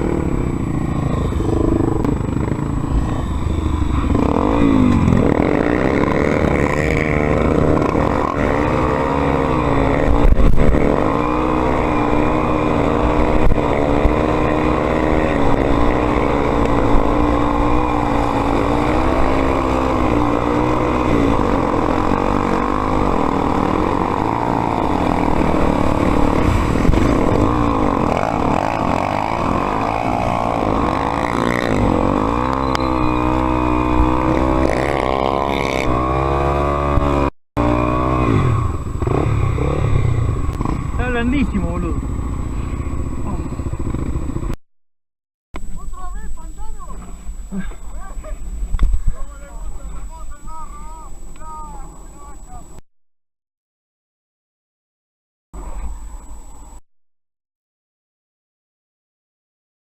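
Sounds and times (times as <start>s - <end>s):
dirt bike engine revving: 0.0s - 44.6s.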